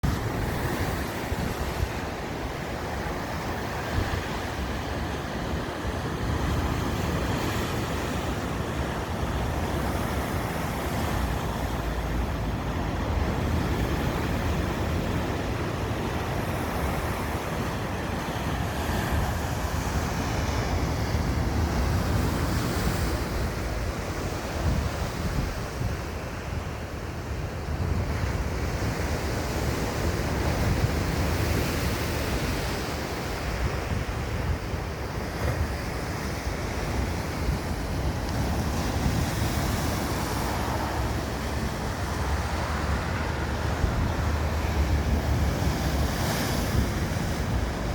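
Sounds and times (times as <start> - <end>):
sea waves breaking: 0.0 - 47.9
wind buffeting microphone: 0.0 - 47.9.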